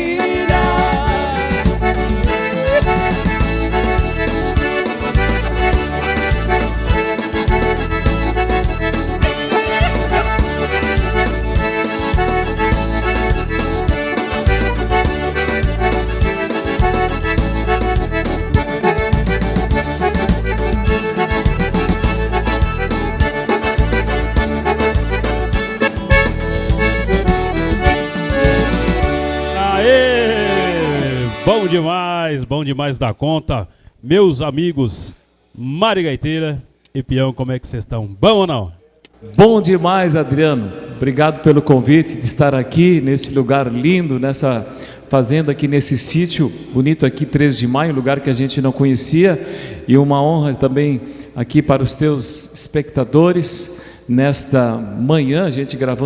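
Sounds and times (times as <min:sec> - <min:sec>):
repeating bass line: 0:00.0 - 0:32.0
accordion folk music: 0:00.0 - 0:32.3.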